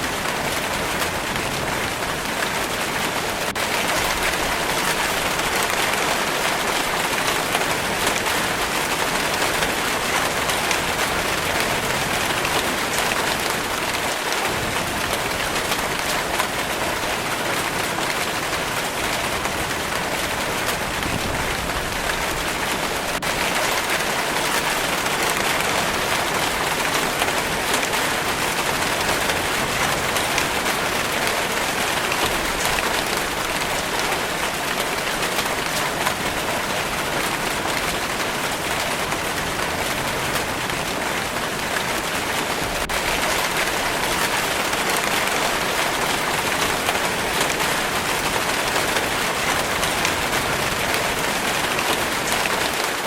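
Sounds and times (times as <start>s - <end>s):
rain pattering: 0.0s - 53.0s.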